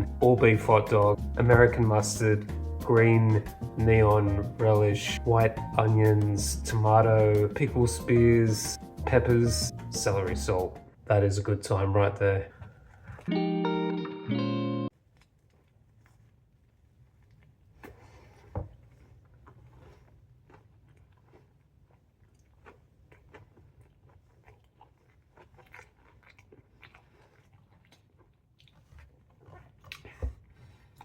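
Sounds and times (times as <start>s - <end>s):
crunch of biting into food: 17.2s - 31.0s
chewing clicks: 19.2s - 30.3s.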